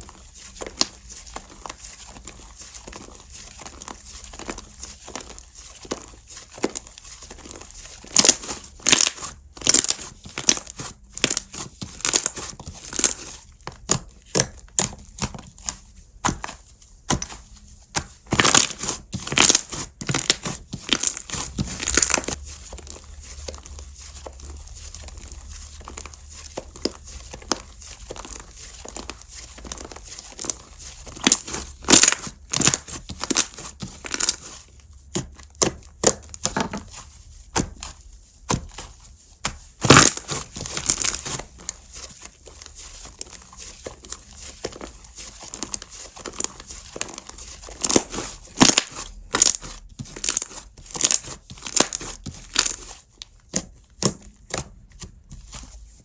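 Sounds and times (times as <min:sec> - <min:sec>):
slime squeezed by hand: 0:39.6 - 0:42.0.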